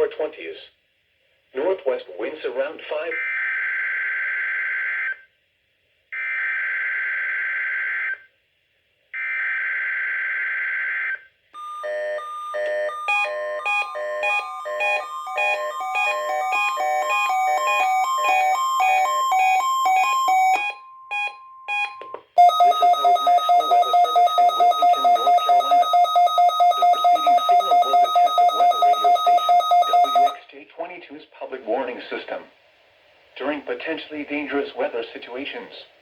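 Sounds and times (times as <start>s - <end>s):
steady alarm tone: 11.6s - 30.4s
fast electronic alarm beeps: 11.7s - 30.4s.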